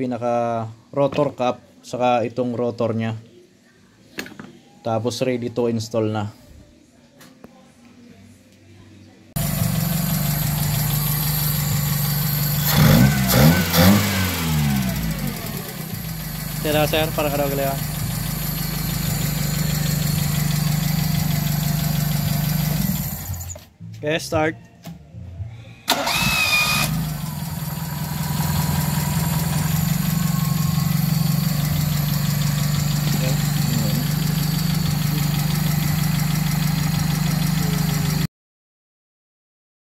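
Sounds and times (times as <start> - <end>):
car engine running and revving: 9.4 - 23.5, 26.1 - 38.3
starter motor whining: 9.7 - 23.6, 25.9 - 38.2.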